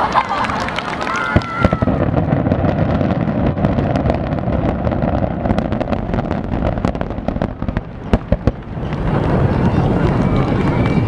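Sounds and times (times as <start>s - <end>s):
fireworks booming and cracking: 0.0s - 11.0s.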